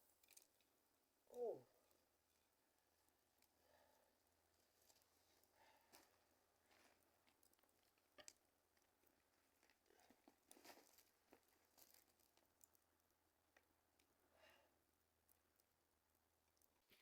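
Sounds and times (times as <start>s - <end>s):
faint clicks and crunches: 0.1s - 0.7s, 4.5s - 14.1s.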